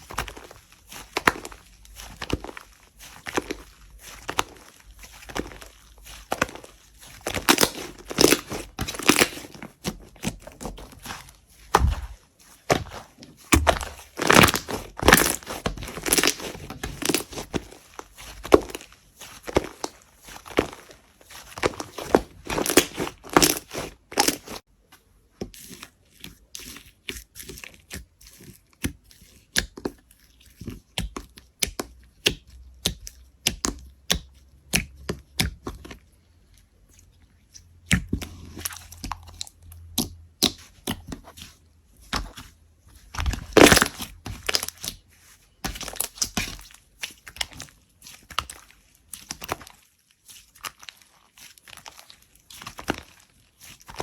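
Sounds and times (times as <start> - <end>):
slime crackling and popping: 0.0 - 24.6, 43.2 - 45.0, 45.6 - 49.8.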